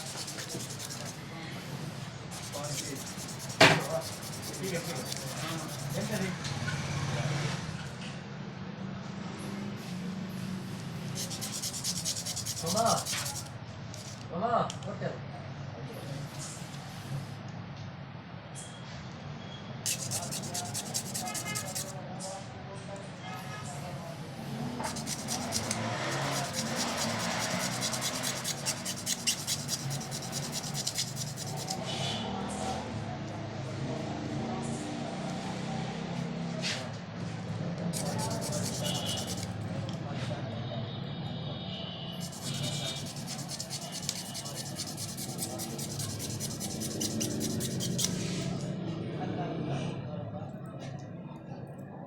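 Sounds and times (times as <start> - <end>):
rapid rubbing strokes: 0.0 - 1.2, 2.3 - 6.3, 11.0 - 14.2, 19.9 - 22.0, 24.8 - 31.9, 38.0 - 39.6, 42.2 - 48.6.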